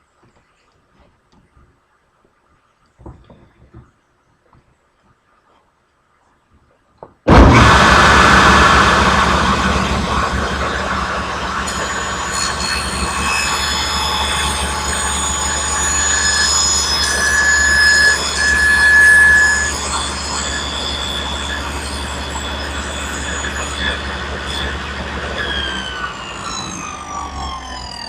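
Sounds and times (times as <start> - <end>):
high squealing whine: 7.3 - 28.0
table saw motor hum: 7.3 - 28.0.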